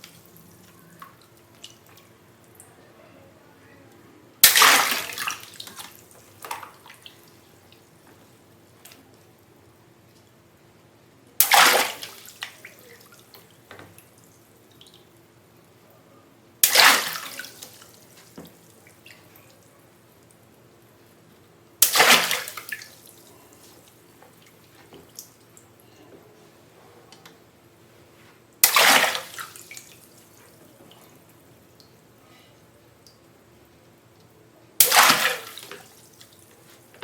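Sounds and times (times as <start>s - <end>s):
water dripping: 0.0s - 2.9s, 4.4s - 9.4s, 11.4s - 15.8s, 16.6s - 21.0s, 21.8s - 25.9s, 28.6s - 32.1s, 34.1s - 36.8s
water balloons bursting: 4.4s - 6.7s, 11.4s - 12.6s, 16.6s - 18.0s, 21.8s - 23.0s, 28.6s - 29.8s, 34.8s - 35.9s.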